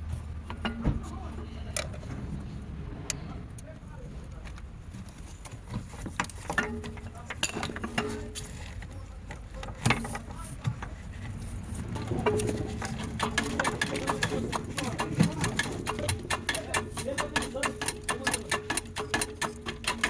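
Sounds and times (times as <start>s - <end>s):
tool clicks and knocks on metal: 6.1s - 11.0s, 12.0s - 20.0s.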